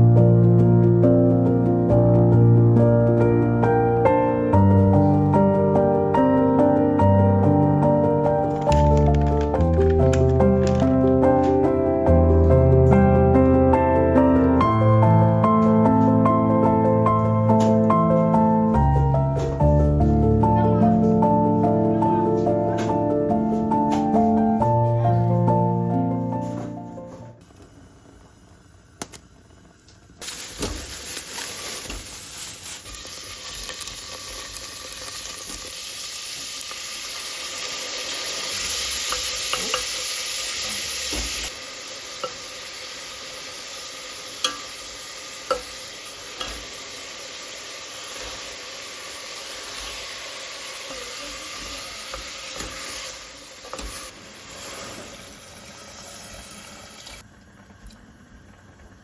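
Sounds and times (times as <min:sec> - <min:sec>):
food sizzling in a pan: 0:27.7 - 0:59.0.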